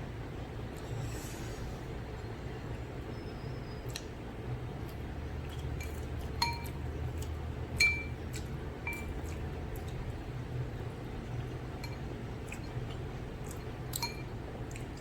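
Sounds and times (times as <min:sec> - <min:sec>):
steady low hum: 0:00.0 - 0:15.0
cutlery clinking against bowl: 0:05.8 - 0:06.8, 0:07.8 - 0:08.2, 0:08.9 - 0:09.2, 0:13.9 - 0:14.3.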